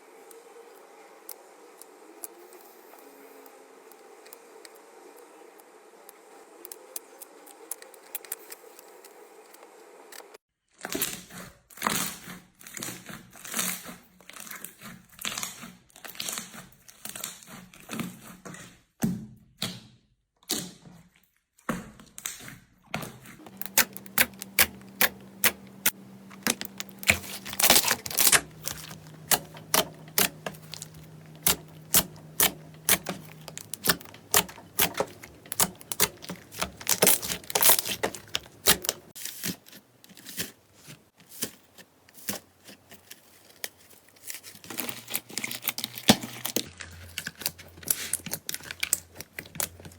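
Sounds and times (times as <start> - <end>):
slime squelching: 23.4 - 40.5.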